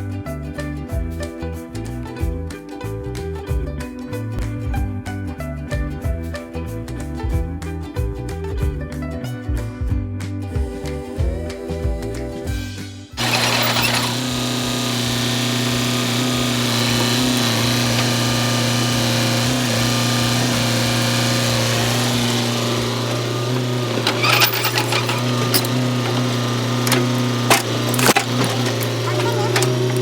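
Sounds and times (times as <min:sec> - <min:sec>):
excavator engine and hydraulics: 0:13.2 - 0:30.0
wood splitting cracks: 0:13.2 - 0:30.0.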